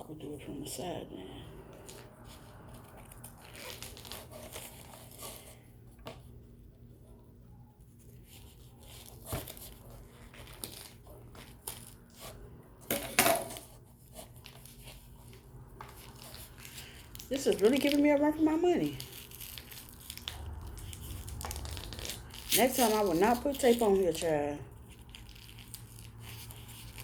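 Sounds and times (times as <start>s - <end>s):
packing tape scratching and crinkling: 1.8s - 5.6s, 8.1s - 12.4s, 13.5s - 27.0s
tape ripping: 1.9s - 5.4s, 8.6s - 12.4s, 15.8s - 27.0s.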